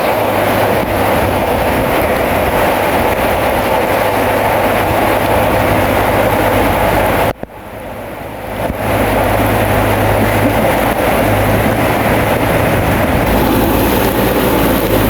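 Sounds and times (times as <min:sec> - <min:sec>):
bulldozer diesel engine running: 0:00.0 - 0:15.0.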